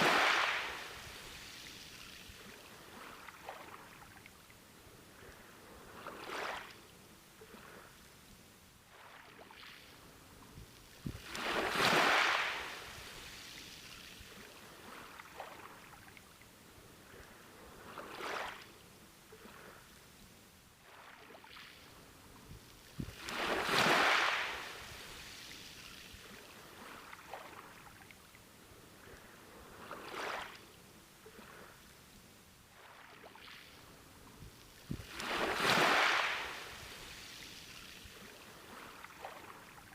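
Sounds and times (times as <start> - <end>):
sea waves breaking on beach: 0.0 - 4.2, 5.6 - 6.8, 8.9 - 16.1, 17.1 - 18.8, 20.8 - 28.1, 29.0 - 31.8, 32.7 - 39.9.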